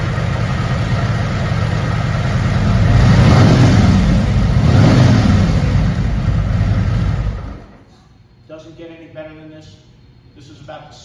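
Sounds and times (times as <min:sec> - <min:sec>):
motorcycle engine revving: 0:00.0 - 0:07.7.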